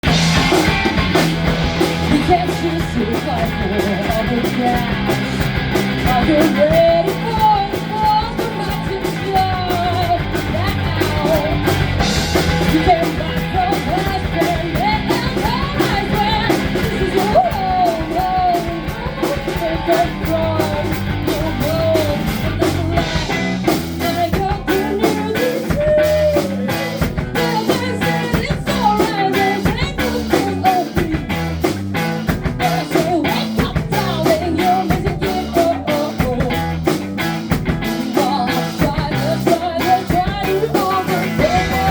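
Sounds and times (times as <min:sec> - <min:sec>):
drums: 0:00.0 - 0:41.9
live rock band playing: 0:00.0 - 0:41.9
lead vocal singing: 0:01.6 - 0:31.5, 0:32.4 - 0:37.0, 0:37.8 - 0:41.9.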